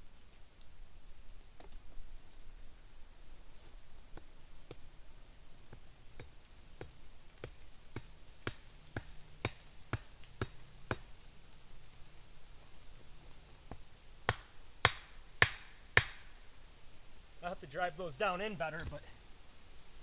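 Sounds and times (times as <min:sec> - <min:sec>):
wooden stakes being tapped: 0:04.1 - 0:04.9, 0:05.5 - 0:11.6, 0:13.6 - 0:16.4.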